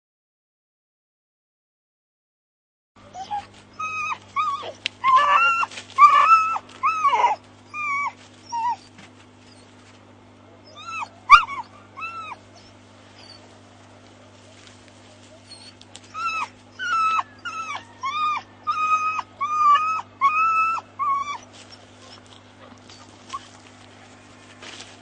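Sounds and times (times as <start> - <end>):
puppy whining and yelping: 3.0 - 9.8, 10.6 - 13.6, 15.1 - 23.6
steady low hum: 3.0 - 25.0.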